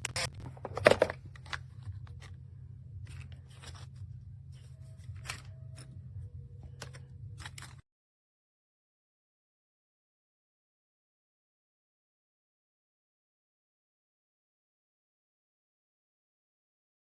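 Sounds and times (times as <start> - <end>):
steady low hum: 0.0 - 7.8.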